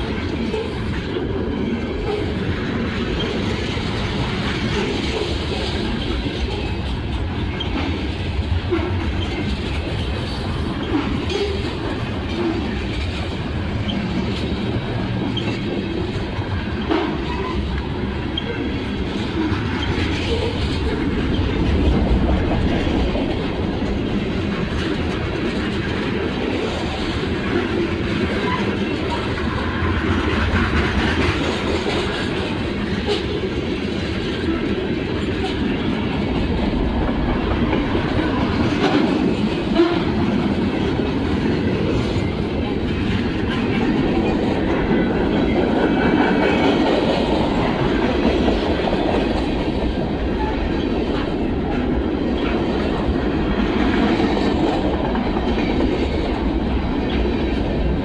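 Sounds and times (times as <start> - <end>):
freight train cars rolling: 0.0 - 58.0.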